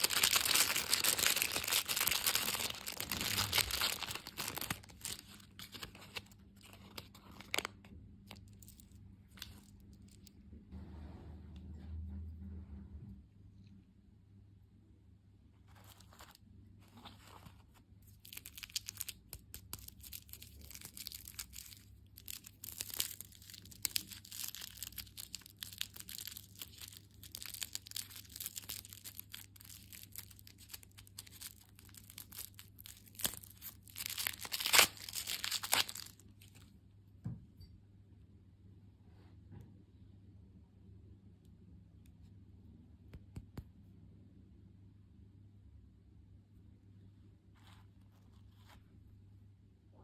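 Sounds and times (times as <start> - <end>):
wrapper tearing: 0.0 - 10.2, 18.0 - 36.6
plastic wrapper crinkling: 0.0 - 10.4, 15.7 - 36.7.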